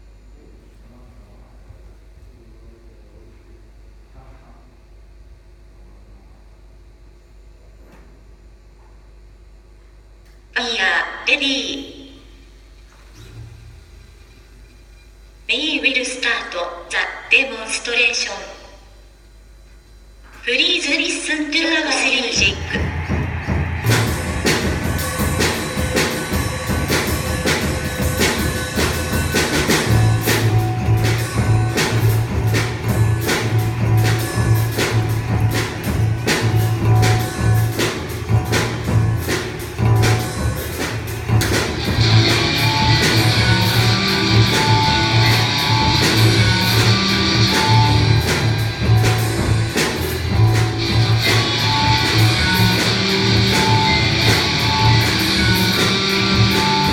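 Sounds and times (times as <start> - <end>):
steady percussion beat: 22.3 - 56.9
electric guitar: 22.4 - 56.9
low bass line: 22.4 - 56.9.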